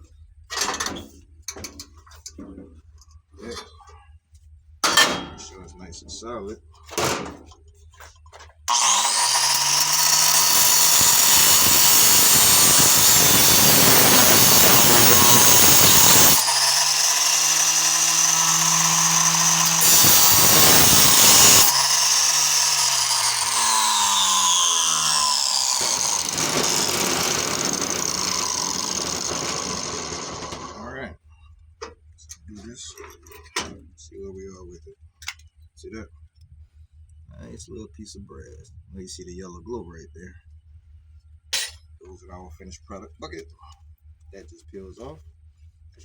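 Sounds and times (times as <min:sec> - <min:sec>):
angle grinder cutting metal: 0:08.7 - 0:30.8.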